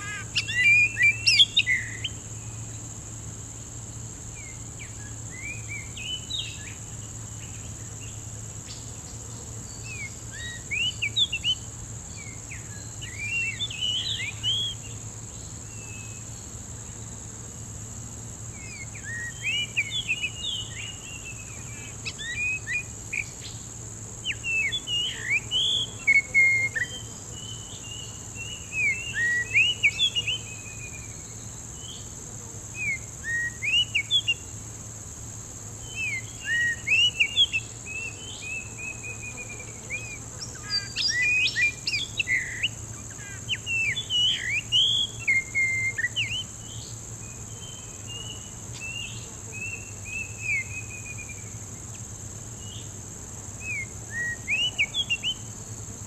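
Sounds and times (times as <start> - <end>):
bird whistling song: 0.0 - 2.1, 36.0 - 46.5, 48.8 - 51.5, 53.6 - 55.4
high insect drone: 0.0 - 56.0.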